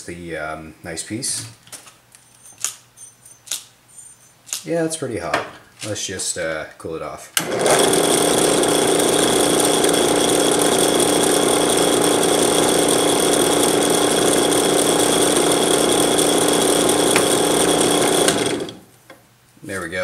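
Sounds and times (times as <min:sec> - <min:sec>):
power tool motor whining: 0:07.4 - 0:18.9.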